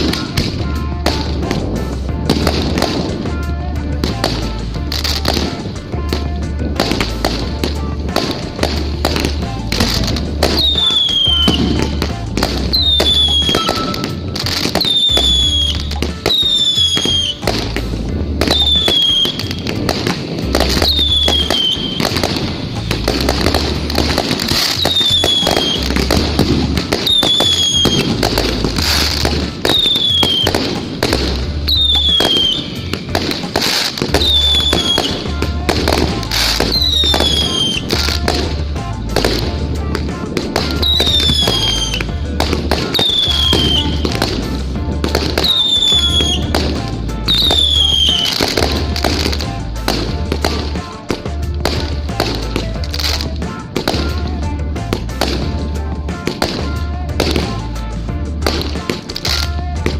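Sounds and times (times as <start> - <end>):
fireworks popping and crackling: 0.0 - 59.9
music with heavy bass beat: 0.0 - 59.9
short falling whistle: 12.8 - 14.1.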